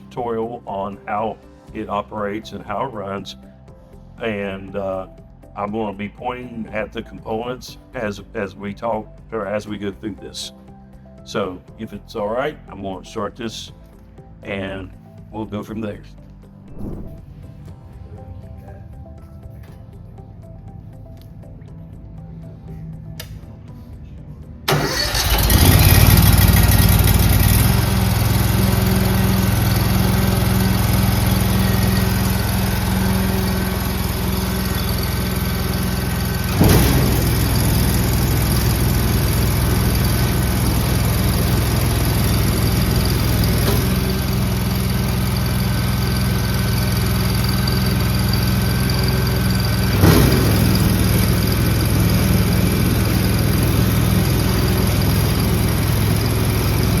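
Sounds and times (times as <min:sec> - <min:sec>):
low hum: 0:16.6 - 0:17.8, 0:26.3 - 0:57.0
brief knock: 0:16.7 - 0:17.3
concrete mixer engine running: 0:24.7 - 0:57.0.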